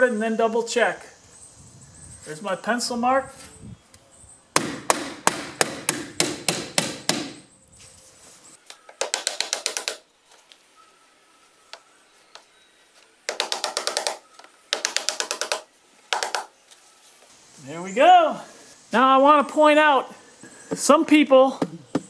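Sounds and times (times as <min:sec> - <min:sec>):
hammer driving nails: 0:04.6 - 0:07.4, 0:08.7 - 0:10.6, 0:13.0 - 0:16.6
quick hammer taps: 0:08.7 - 0:10.6, 0:11.7 - 0:16.6.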